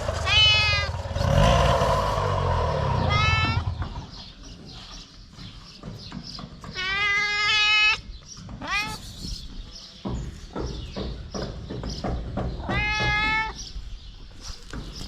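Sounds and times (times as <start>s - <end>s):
cat meowing: 0.2s - 1.0s, 3.0s - 3.8s, 6.8s - 8.0s, 8.6s - 9.3s, 12.6s - 13.6s.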